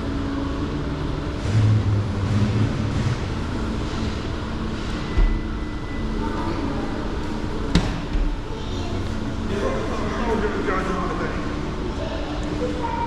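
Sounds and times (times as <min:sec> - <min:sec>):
cars passing by: 0:00.0 - 0:13.0
traffic rumble: 0:00.0 - 0:13.0.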